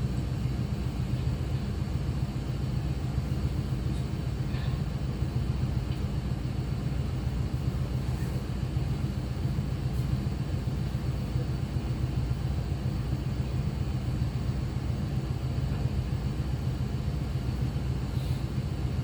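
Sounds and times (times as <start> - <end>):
low hum of equipment and ventilation: 0.0 - 19.0.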